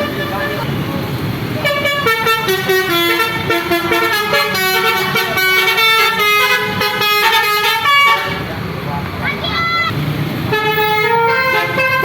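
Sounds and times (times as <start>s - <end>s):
musical bus air horn: 0.0s - 0.8s, 1.6s - 8.5s, 10.5s - 12.0s
vehicle rumble: 0.0s - 12.0s.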